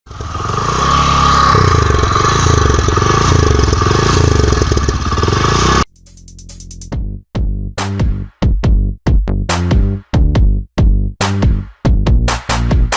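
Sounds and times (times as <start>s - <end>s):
motorcycle engine revving: 0.0s - 5.9s.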